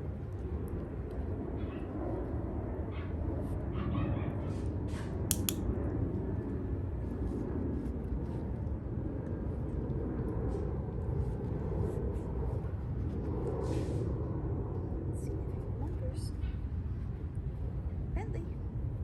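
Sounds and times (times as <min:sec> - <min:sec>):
low outdoor rumble: 0:00.0 - 0:19.0
sharp click: 0:05.3 - 0:05.6.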